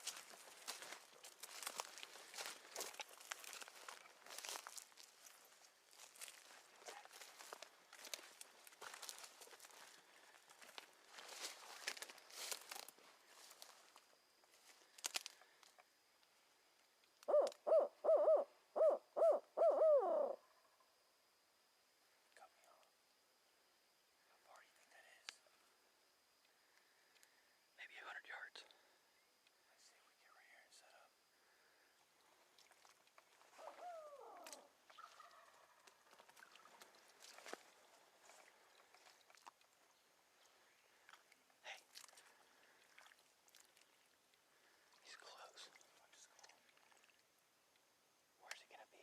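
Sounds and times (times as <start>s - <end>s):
faint bird calls: 17.2s - 20.9s, 33.4s - 36.2s
barred owl hooting: 17.3s - 20.6s, 33.5s - 35.9s.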